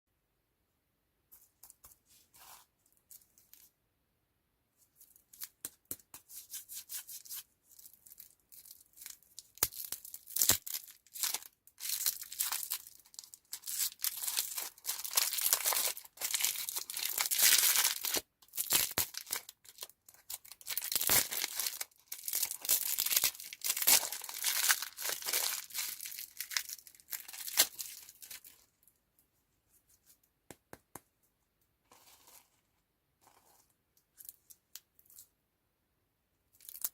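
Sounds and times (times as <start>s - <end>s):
candy packaging crinkling: 7.3s - 28.7s, 36.5s - 36.9s.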